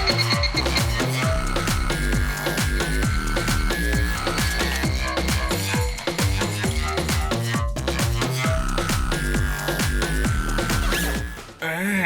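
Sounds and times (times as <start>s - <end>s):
electronic dance music: 0.0s - 11.8s.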